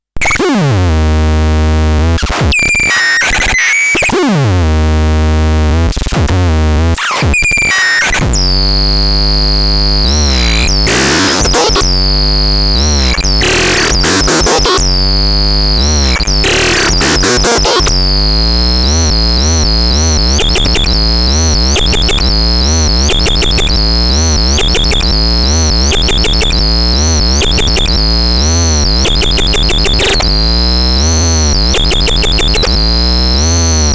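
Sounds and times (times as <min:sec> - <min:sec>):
synthesizer tones over heavy bass: 0:08.2 - 0:33.9.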